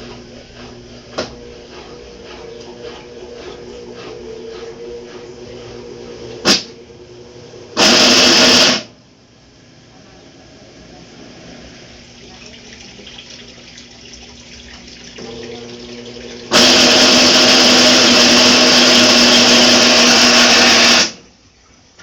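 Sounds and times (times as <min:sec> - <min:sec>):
loud harsh spinning noise: 0:00.0 - 0:08.9, 0:16.2 - 0:21.2
washing machine motor hum: 0:00.0 - 0:22.0.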